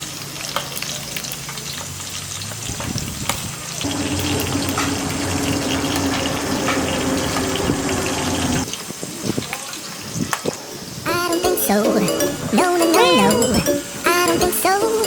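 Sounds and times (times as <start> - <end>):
fish frying in hot oil: 0.0 - 11.0
steady low hum: 3.8 - 8.7.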